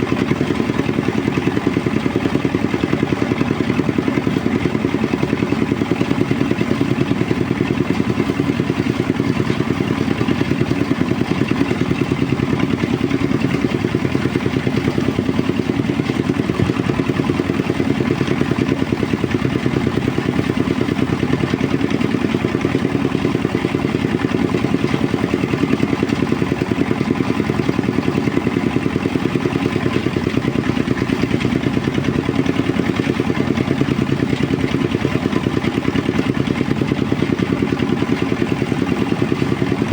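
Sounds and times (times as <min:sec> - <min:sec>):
threshing machine engine running: 0:00.0 - 0:39.9.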